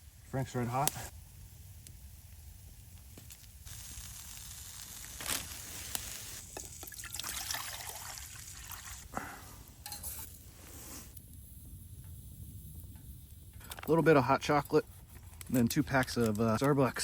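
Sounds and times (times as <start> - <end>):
water pouring into a pot: 6.0 - 9.1.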